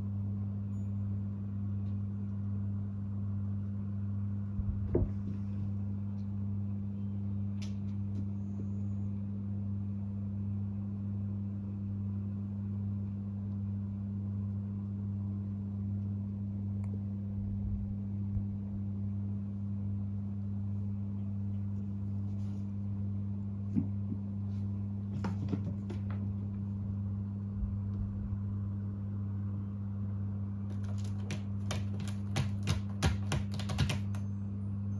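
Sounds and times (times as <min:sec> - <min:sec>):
low electrical hum: 0:00.0 - 0:34.9
faint clicks and taps: 0:30.7 - 0:34.2.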